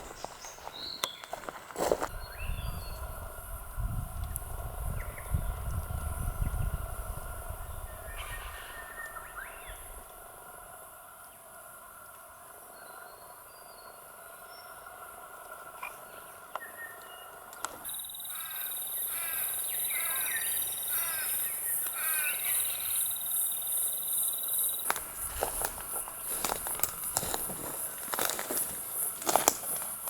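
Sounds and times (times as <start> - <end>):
footsteps on dry leaves: 0.0 - 2.2, 24.8 - 30.0
insects shrilling: 17.8 - 30.0.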